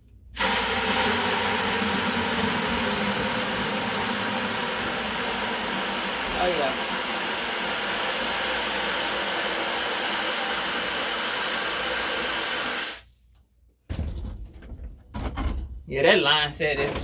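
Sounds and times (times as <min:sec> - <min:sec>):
water rushing through pipe: 0:00.4 - 0:13.0.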